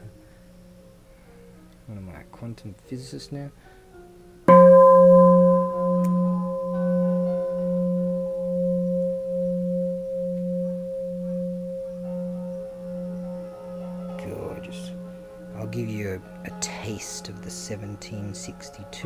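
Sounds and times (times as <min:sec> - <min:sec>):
temple bell ringing: 0:04.5 - 0:18.3.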